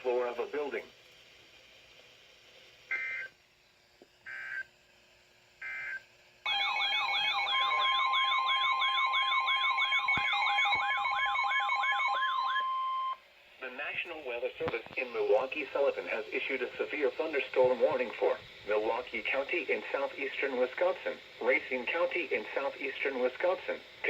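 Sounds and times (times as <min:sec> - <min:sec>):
steady warning alarm tone: 0:05.6 - 0:13.2
alarm siren warbling: 0:06.5 - 0:13.2
digital data tones: 0:07.1 - 0:13.2.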